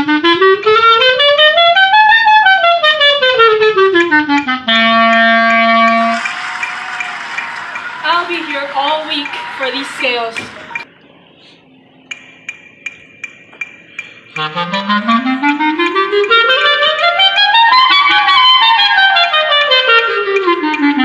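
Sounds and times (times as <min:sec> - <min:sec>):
clarinet playing fast scale: 0:14.4 - 0:21.0.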